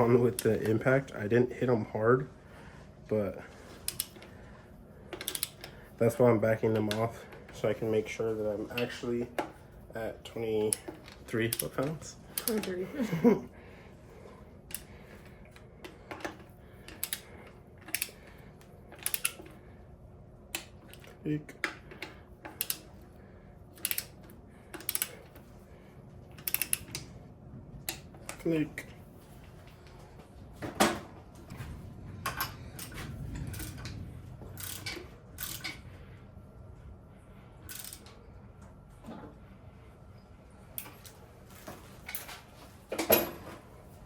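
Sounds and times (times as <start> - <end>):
torque wrench clicks: 3.9 - 4.2, 5.2 - 5.8, 10.6 - 12.7, 16.9 - 17.3, 17.9 - 18.2, 19.0 - 19.5, 21.9 - 22.9, 23.8 - 24.2, 24.8 - 25.2, 26.4 - 27.1, 34.6 - 35.8, 37.7 - 38.1.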